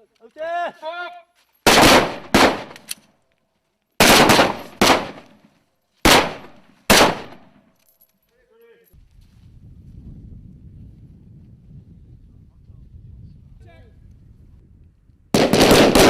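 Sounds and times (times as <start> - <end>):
gunshots with echo: 1.7 - 2.8, 4.0 - 5.3, 6.1 - 7.5, 15.4 - 16.0.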